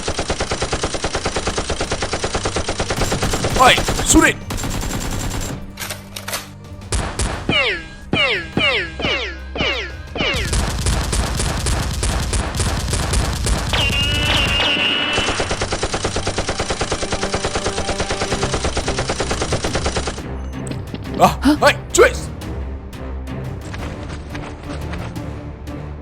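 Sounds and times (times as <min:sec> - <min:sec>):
rapid automatic gunfire: 0:00.0 - 0:05.6, 0:10.4 - 0:17.6
machine-gun rattle: 0:04.6 - 0:06.5.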